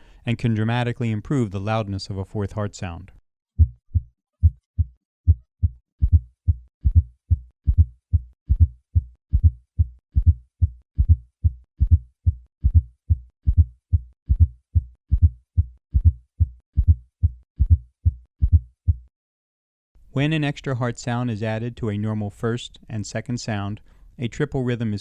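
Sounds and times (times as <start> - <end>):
faint fourth heart sound: 3.6 - 19.1
heartbeat thuds: 3.6 - 19.1.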